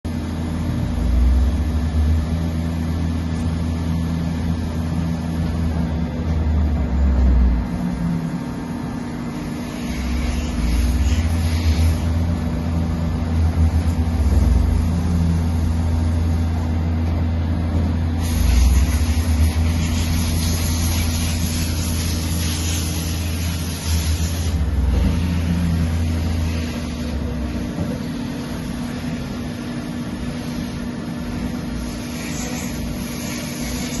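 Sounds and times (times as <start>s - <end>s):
lathe machine hum: 0.1s - 34.0s
hiss: 7.7s - 12.8s, 18.2s - 34.0s.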